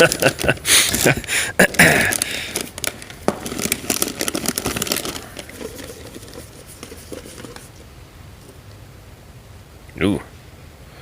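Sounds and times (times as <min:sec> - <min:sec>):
snack packaging crinkling: 0:00.0 - 0:07.8.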